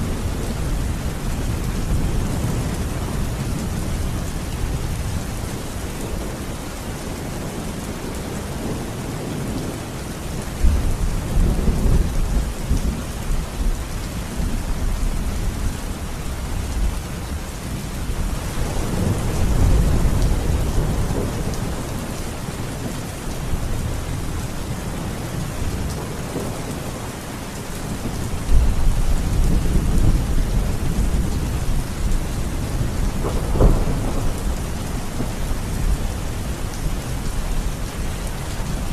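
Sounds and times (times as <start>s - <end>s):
steady rain: 0.0s - 38.9s
thunder rolling: 32.4s - 36.4s.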